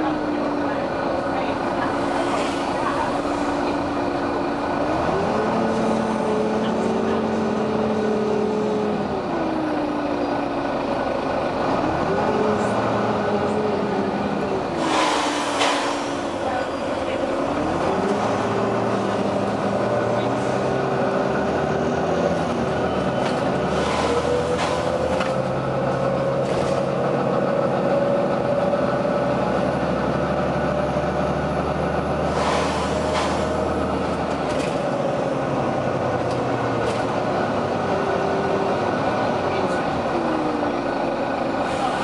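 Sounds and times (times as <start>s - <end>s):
bus diesel engine running: 0.0s - 42.0s
pneumatic air hisses: 14.8s - 16.3s, 32.3s - 33.5s.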